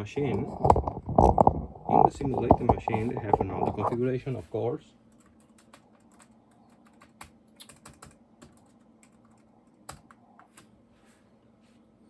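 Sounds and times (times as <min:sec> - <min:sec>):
typing on computer keyboard: 0:05.1 - 0:10.7.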